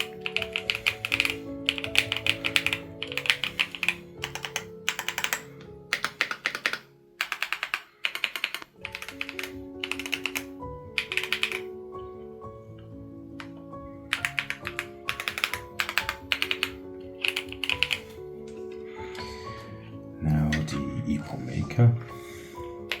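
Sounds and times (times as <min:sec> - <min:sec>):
fast typing on mechanical keyboard: 0:00.0 - 0:11.7, 0:13.3 - 0:18.2, 0:22.8 - 0:23.0
background music: 0:00.0 - 0:23.0.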